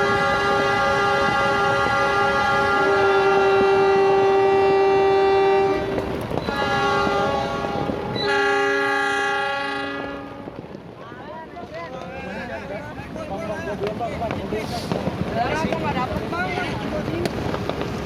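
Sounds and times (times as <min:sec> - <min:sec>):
locomotive air horns blasting: 0:00.0 - 0:10.6.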